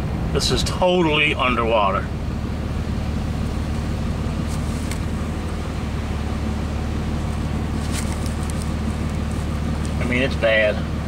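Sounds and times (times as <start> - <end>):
truck engine hum: 0.0 - 11.0
water washing against tyres: 3.0 - 10.2.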